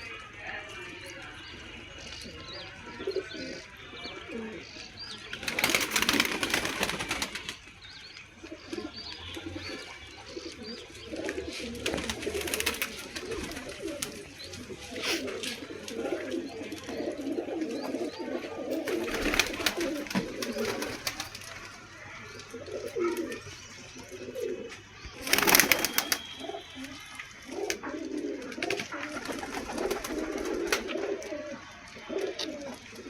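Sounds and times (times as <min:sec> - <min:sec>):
clattering wing-beats: 0:05.3 - 0:07.8, 0:11.8 - 0:14.3, 0:18.8 - 0:21.8, 0:25.2 - 0:26.4, 0:28.5 - 0:31.0
pigeons cooing: 0:08.5 - 0:33.0.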